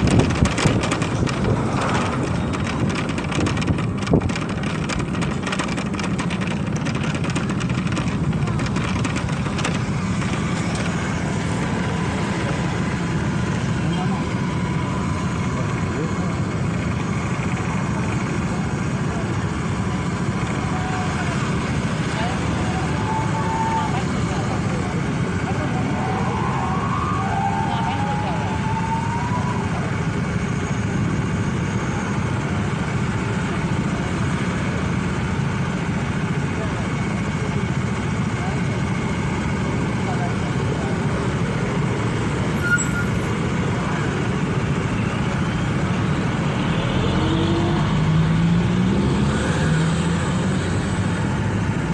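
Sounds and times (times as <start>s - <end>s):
motorcycle engine hum: 0.0s - 27.5s
wind and road noise: 0.0s - 51.9s.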